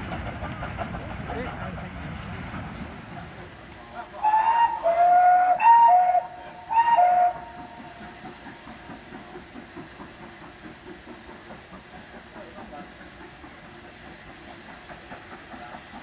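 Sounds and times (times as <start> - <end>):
train running rhythm: 0.0 - 16.0
steam locomotive whistle blasts: 4.2 - 7.8.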